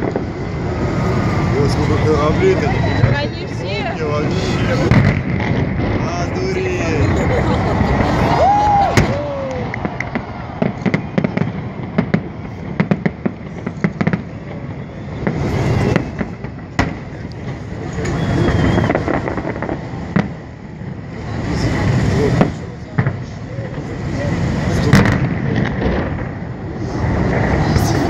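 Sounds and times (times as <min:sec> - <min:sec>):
crackling firework pops: 0:00.0 - 0:00.4, 0:08.7 - 0:20.5, 0:22.3 - 0:24.0, 0:24.8 - 0:28.0
crowd voices: 0:00.0 - 0:28.0
firework bang: 0:00.0 - 0:28.0.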